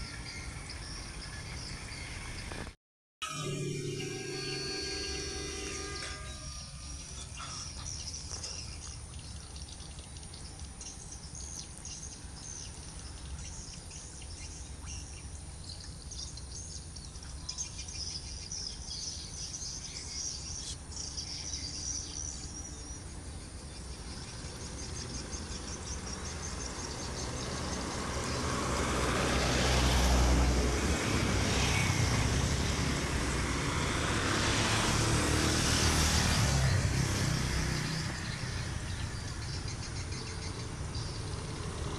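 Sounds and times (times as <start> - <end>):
vehicle rumble: 0.0 - 41.9
birds chirping: 3.4 - 28.6, 35.7 - 41.9.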